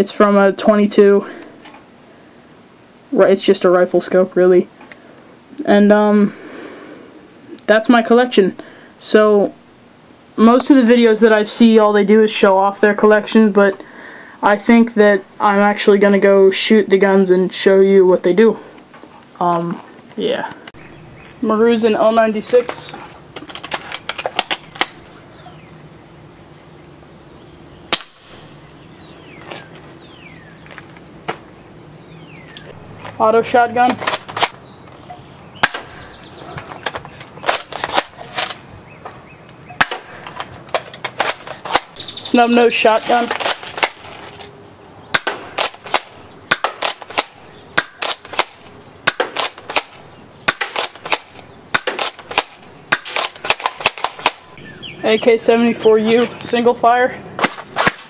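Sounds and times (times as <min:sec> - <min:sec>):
airsoft rifle shot: 0:27.9 - 0:28.4, 0:35.6 - 0:36.1, 0:39.8 - 0:40.3, 0:45.1 - 0:54.5.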